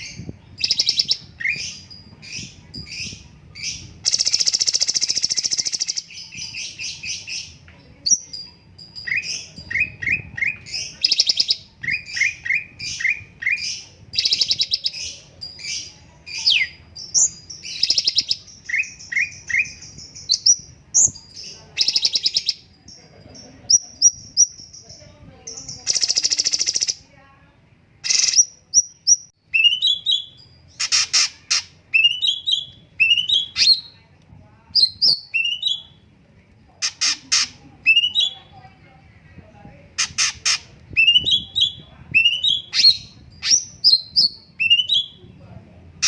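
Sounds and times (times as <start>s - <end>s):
songbird singing: 0.0s - 46.0s.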